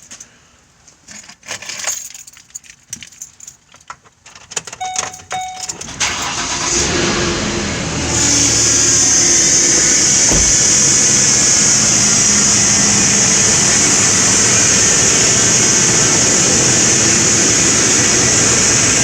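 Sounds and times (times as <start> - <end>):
keys jangling and clicking: 1.0 - 5.9
short beeps: 4.8 - 5.8
car engine starting and running: 4.8 - 19.0.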